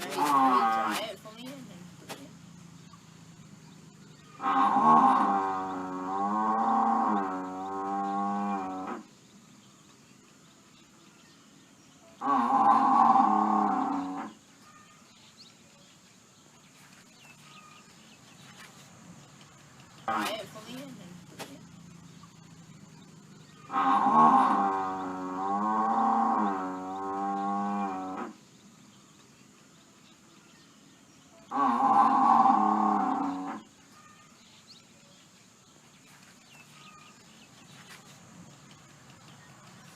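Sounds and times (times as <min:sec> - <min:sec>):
faint chirping: 0:00.0 - 0:39.9
buffalo low call: 0:04.2 - 0:09.1, 0:23.6 - 0:28.4.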